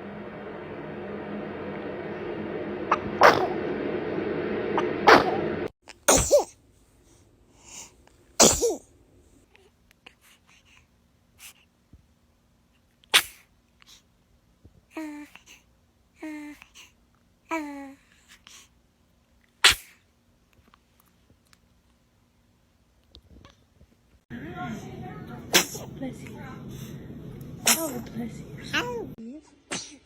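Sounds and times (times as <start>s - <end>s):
baby sneezing: 6.1s - 6.6s, 8.4s - 8.8s, 13.1s - 13.5s, 19.6s - 20.0s, 25.5s - 25.9s, 27.6s - 28.0s, 29.7s - 30.0s.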